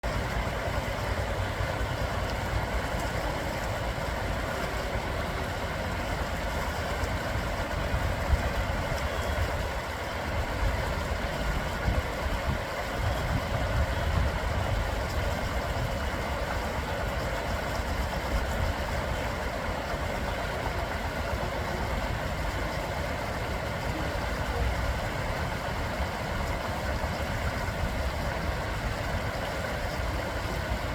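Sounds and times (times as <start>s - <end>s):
flowing water rushing: 0.0s - 30.9s.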